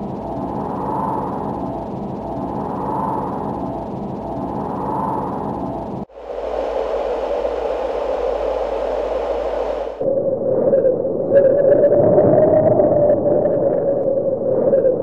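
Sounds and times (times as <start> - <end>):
wavering drone: 0.0 - 11.9
steady hissing rush: 4.6 - 10.2.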